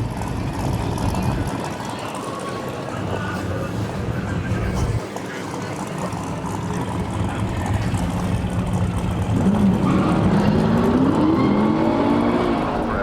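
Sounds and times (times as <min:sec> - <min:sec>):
car engine accelerating: 0:04.1 - 0:13.0.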